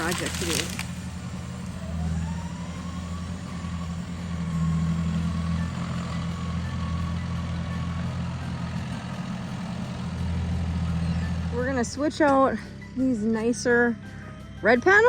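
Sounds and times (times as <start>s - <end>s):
thin steady whine: 0.0s - 6.9s
farm machine engine running: 0.0s - 12.7s.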